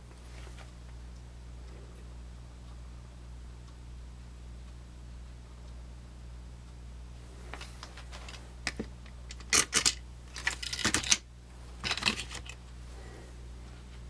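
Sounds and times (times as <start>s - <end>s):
pocket knives clicking and clacking: 8.3s - 11.2s, 11.8s - 12.6s.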